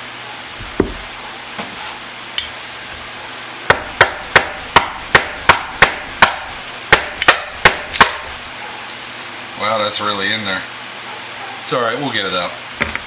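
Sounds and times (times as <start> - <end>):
hammer striking metal: 3.7 - 8.4.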